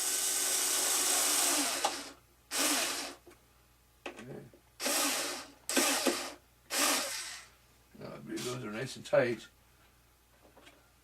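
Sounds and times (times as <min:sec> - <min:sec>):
power screwdriver driving screw: 0:04.8 - 0:07.5.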